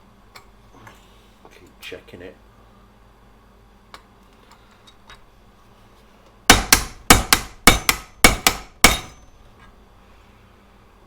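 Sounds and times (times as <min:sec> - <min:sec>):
hammer striking metal rivet: 0:06.5 - 0:09.4.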